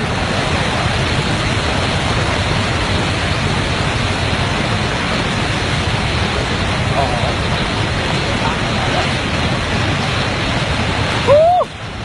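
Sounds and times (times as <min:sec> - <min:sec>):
floodwater rushing torrent: 0:00.0 - 0:12.0.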